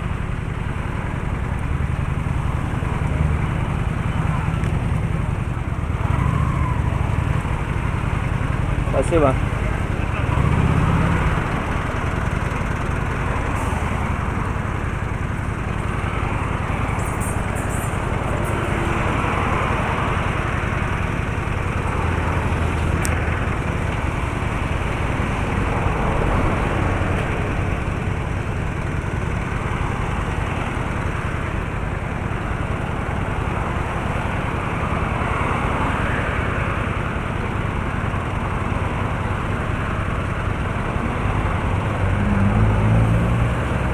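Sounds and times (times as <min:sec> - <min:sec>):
car driving in traffic: 0:00.0 - 0:43.9.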